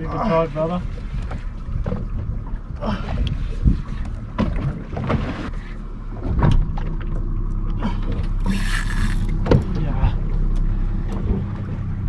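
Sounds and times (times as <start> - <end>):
boat engine idling: 1.3 - 12.0.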